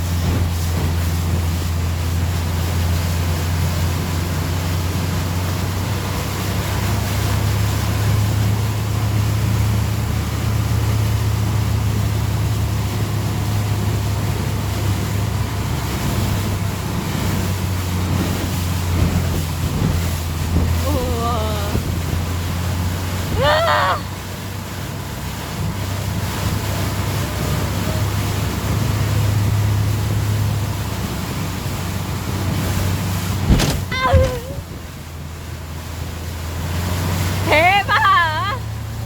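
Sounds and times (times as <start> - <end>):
motorboat engine drone: 0.0 - 39.0
water rushing past hull: 0.0 - 39.0
wind on microphone: 13.0 - 23.5.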